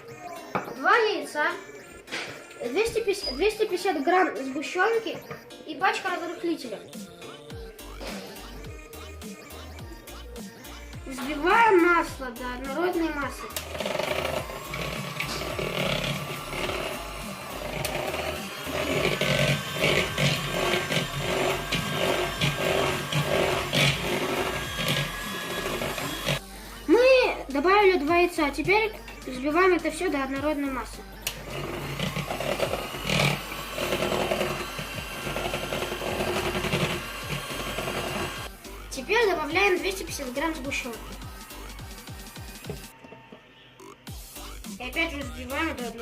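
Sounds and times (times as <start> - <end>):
beaters scraping a bowl: 13.4 - 26.4, 31.2 - 38.5
electric hand mixer running: 13.4 - 26.6, 29.6 - 39.2.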